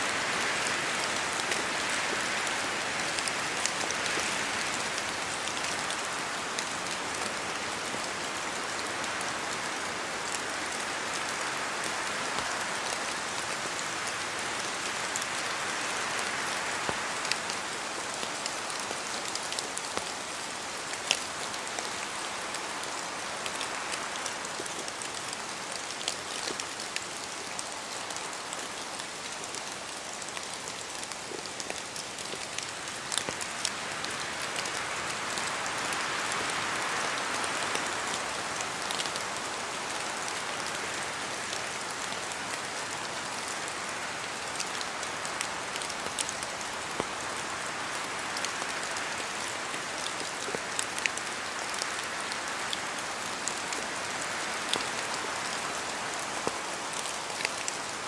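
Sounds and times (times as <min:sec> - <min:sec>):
rain falling in a forest: 0:00.0 - 0:58.0.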